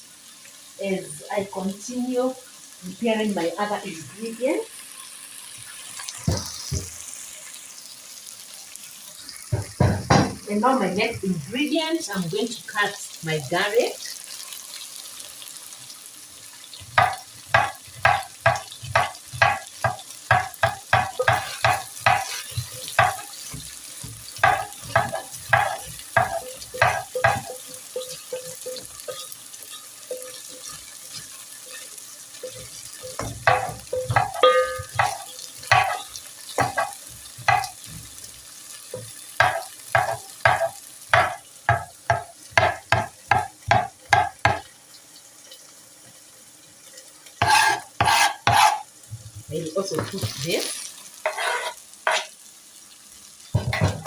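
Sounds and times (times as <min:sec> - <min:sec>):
meat sizzling in a pot: 0:00.0 - 0:54.0
knife chopping on cutting board: 0:17.0 - 0:23.7, 0:24.4 - 0:27.6, 0:47.4 - 0:48.8.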